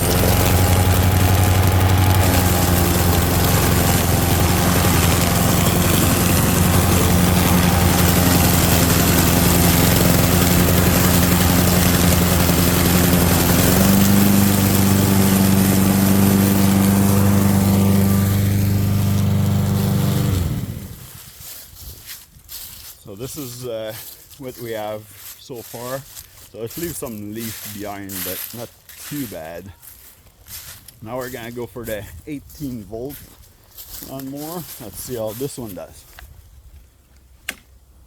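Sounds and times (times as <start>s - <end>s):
lawn mower engine running: 0.0s - 21.6s, 26.1s - 31.8s.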